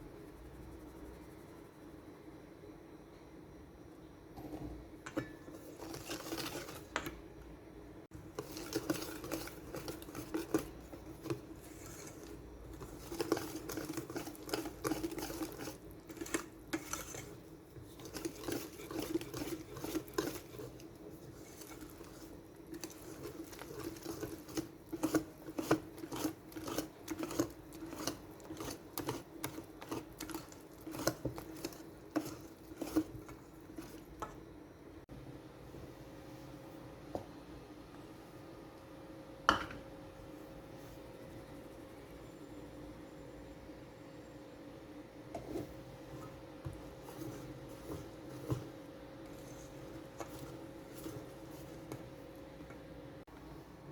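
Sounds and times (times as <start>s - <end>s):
utensil beating in mixing bowl: 4.4s - 7.5s, 8.1s - 34.6s, 45.3s - 53.5s.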